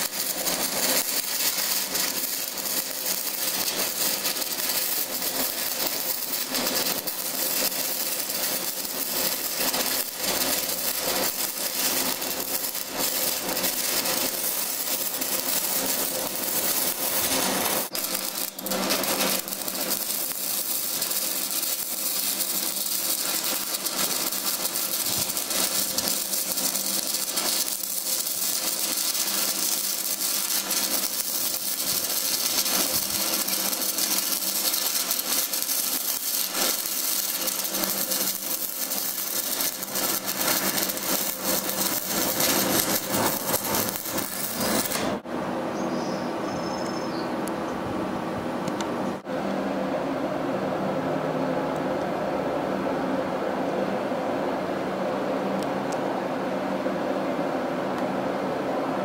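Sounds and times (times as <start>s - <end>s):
welding arc crackling: 0.0s - 45.3s.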